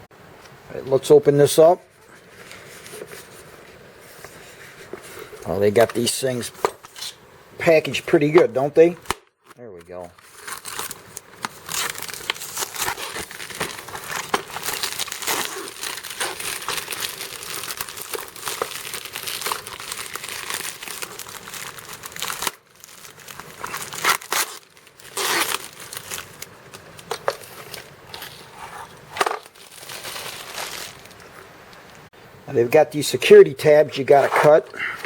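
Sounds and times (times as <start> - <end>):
packaging crinkling and tearing: 8.2 - 31.4.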